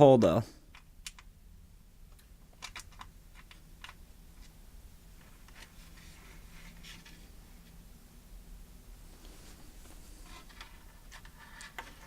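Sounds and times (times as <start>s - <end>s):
light scraping of screw: 9.2s - 12.0s.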